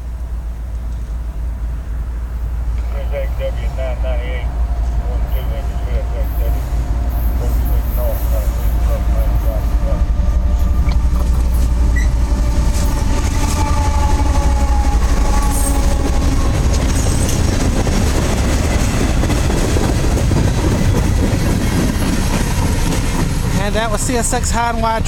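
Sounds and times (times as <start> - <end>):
freight train wheels rumbling on rails: 0.0 - 25.0.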